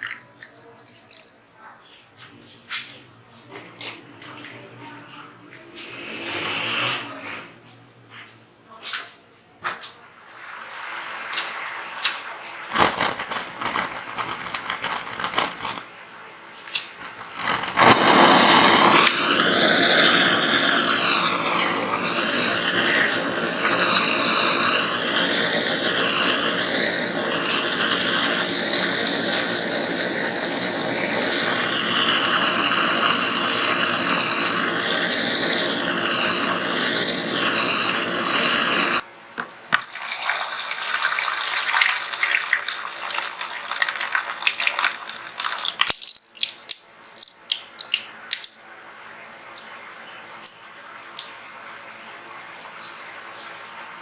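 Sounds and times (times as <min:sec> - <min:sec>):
sandblaster rushing hiss: 0:17.3 - 0:39.0.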